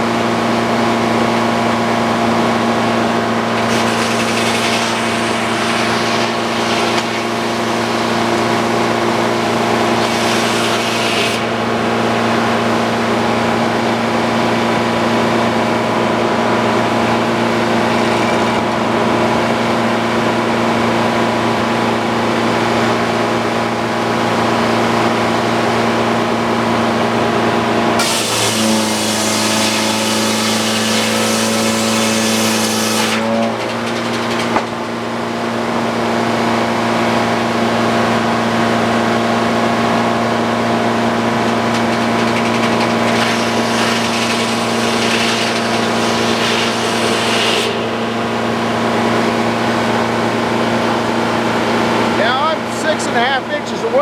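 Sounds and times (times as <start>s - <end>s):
sawmill humming: 0.0s - 54.0s
saw blade cutting log: 2.5s - 13.7s, 27.9s - 34.9s, 39.8s - 50.7s.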